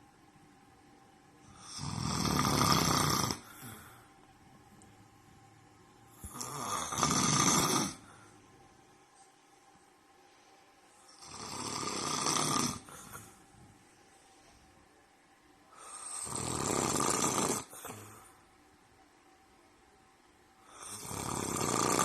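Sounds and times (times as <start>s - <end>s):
man snoring loudly: 1.5s - 3.9s, 6.2s - 8.1s, 11.1s - 13.3s, 15.8s - 18.2s, 20.7s - 22.0s.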